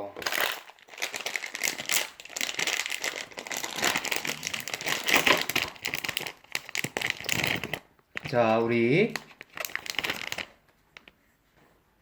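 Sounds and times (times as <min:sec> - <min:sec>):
plastic wrapper crinkling: 0:00.0 - 0:11.2.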